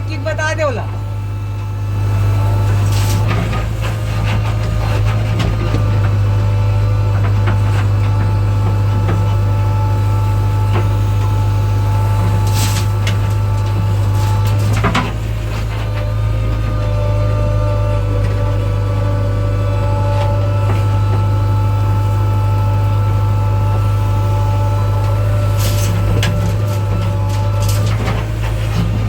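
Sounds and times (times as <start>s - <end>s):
heavy machine engine humming: 0.0s - 29.0s
clanks and knocks: 2.8s - 6.4s, 12.2s - 16.9s, 25.5s - 29.0s.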